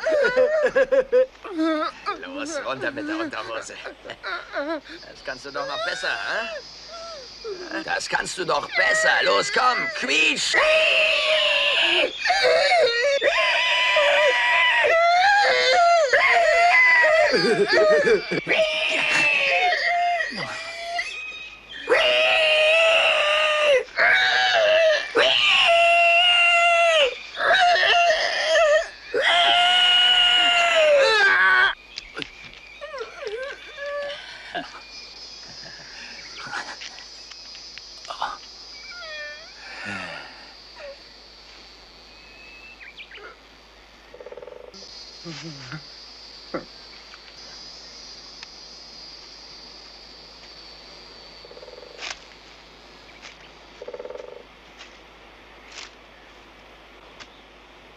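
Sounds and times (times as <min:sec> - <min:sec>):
insects chirring: 0:00.0 - 0:57.9
man squealing like a pig: 0:04.2 - 0:07.9, 0:08.6 - 0:21.2, 0:21.8 - 0:31.8.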